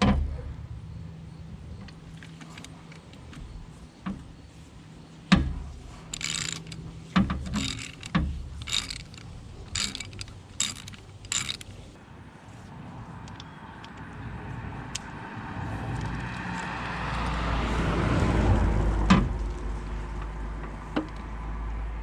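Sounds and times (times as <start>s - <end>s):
tools clunking against metal: 5.3s - 11.9s
socket ratchet clicking: 5.3s - 12.0s.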